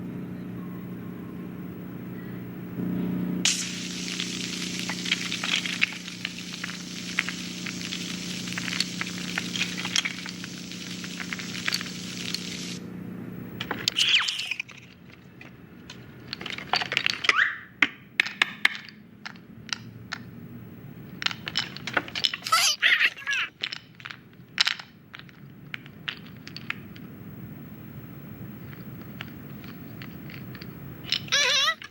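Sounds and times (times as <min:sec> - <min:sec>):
low hum: 0:00.0 - 0:13.7
crackling hiss: 0:03.4 - 0:12.8
short squeaks: 0:13.9 - 0:14.8.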